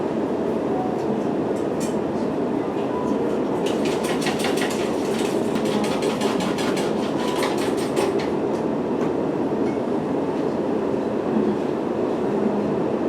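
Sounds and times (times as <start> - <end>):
rapid uneven clatter of clicks: 3.6 - 8.4.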